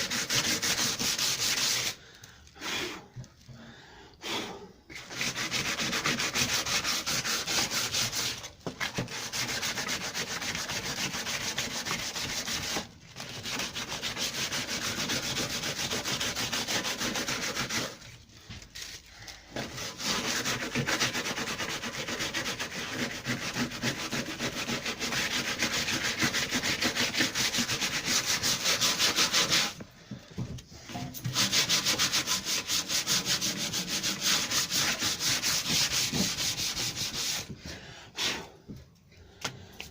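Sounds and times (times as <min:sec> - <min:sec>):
sandpaper scratching on metal filler: 0:00.0 - 0:02.0, 0:04.9 - 0:18.2, 0:19.6 - 0:29.8, 0:31.1 - 0:37.5.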